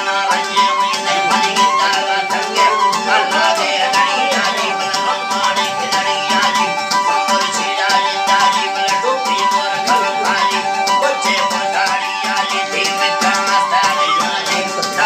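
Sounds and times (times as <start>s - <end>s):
folk melody over drone: 0.0s - 15.0s
sharp rhythmic clicks: 0.0s - 15.0s.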